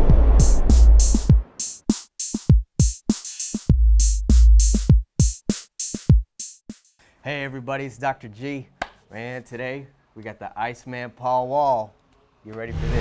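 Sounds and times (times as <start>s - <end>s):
deep bass kicks: 0.0s - 1.4s, 3.7s - 5.0s
drum machine beat: 0.1s - 7.0s.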